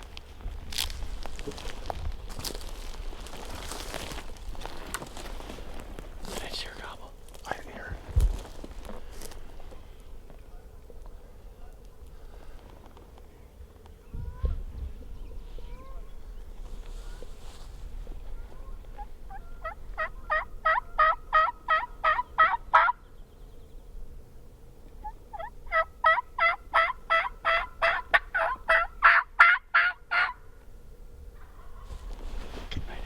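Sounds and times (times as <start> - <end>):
turkey yelping: 18.4 - 23.0, 25.0 - 30.4, 31.4 - 32.0.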